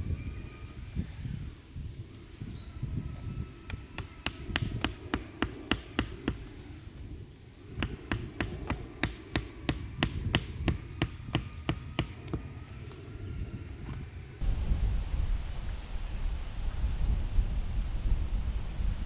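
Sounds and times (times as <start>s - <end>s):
low steady rumble: 14.4s - 19.0s.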